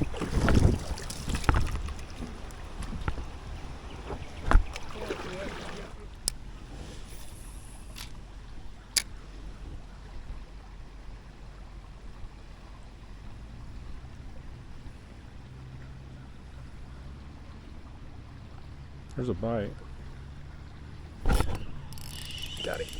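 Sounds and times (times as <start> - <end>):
creek water flowing: 0.0 - 22.9
sharp clicks: 21.2 - 22.9.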